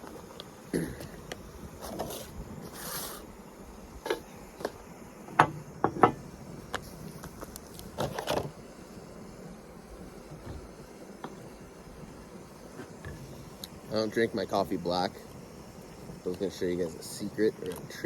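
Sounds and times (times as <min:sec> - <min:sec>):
short hiss: 0:00.0 - 0:03.4.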